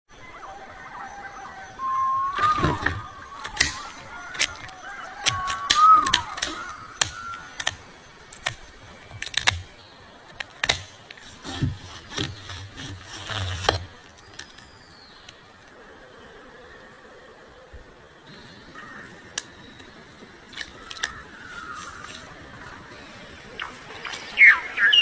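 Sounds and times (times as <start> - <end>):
sharp clicks and knocks: 2.4 - 9.7.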